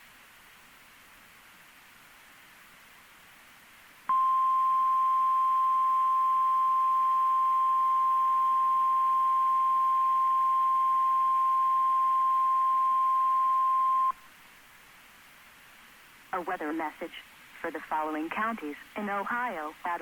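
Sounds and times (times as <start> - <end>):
faint radio hiss: 0.0 - 20.0
loud single-pitched alarm tone: 4.1 - 14.1.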